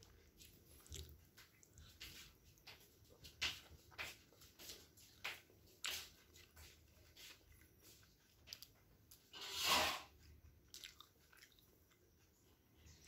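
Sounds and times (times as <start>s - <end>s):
person chewing: 0.0s - 3.1s, 5.2s - 9.3s, 10.2s - 13.0s.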